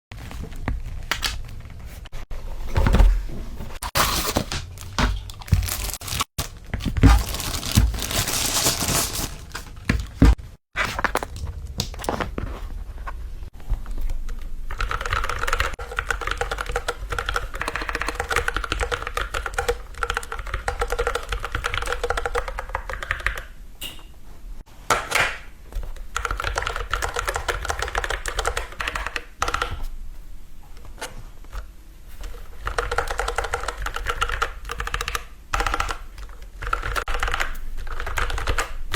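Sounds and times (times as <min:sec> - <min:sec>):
packaging rustling and tearing: 0:03.9 - 0:11.7
fast typing on mechanical keyboard: 0:14.6 - 0:23.5, 0:26.1 - 0:29.8, 0:32.2 - 0:38.9.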